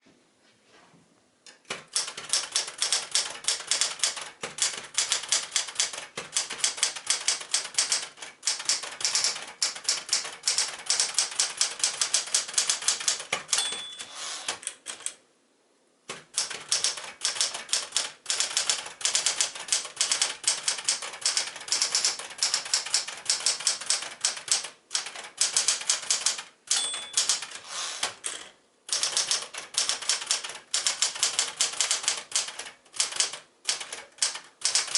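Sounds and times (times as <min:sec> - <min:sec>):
typewriter typing: 0:01.6 - 0:15.2, 0:16.1 - 0:34.9
typewriter margin bell ring: 0:13.5 - 0:14.2, 0:26.7 - 0:27.5.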